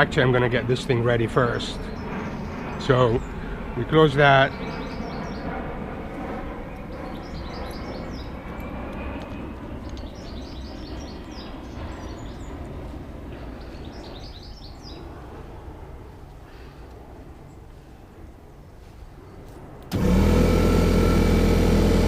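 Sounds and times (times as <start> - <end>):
small birds chirping: 1.6 - 3.6, 4.2 - 5.6, 6.7 - 15.2.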